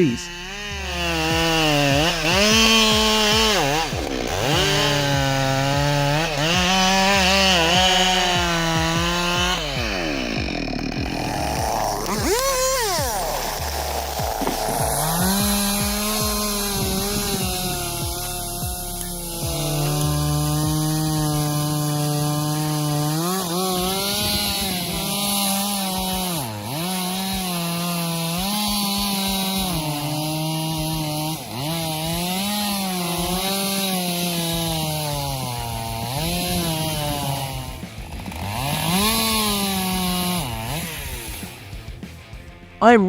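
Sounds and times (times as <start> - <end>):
chainsaw cutting wood: 0.0 - 42.8.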